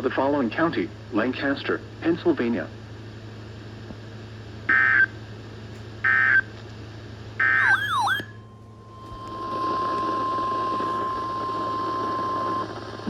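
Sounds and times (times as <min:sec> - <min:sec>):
digital data tone bursts: 0:07.4 - 0:13.0
steady alert tone: 0:07.5 - 0:09.4.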